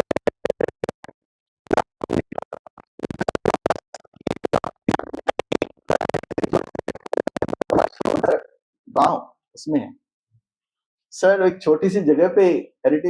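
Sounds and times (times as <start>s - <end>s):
garbled stuttering voices: 1.7s - 9.9s.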